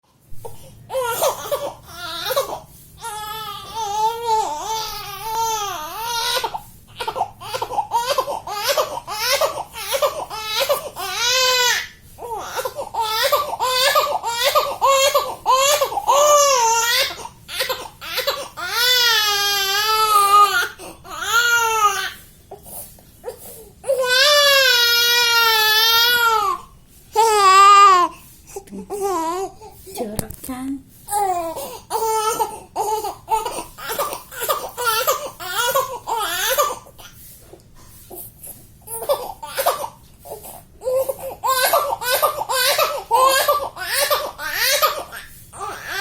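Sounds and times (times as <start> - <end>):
baby crying: 0.9 - 22.2, 23.2 - 28.2, 31.1 - 37.0, 38.9 - 46.0.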